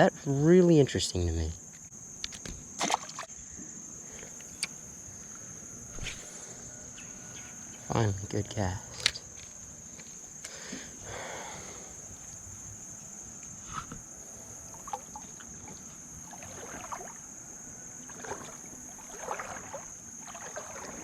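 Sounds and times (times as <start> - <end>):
water sloshing and trickling: 2.3 - 3.4, 14.4 - 21.0.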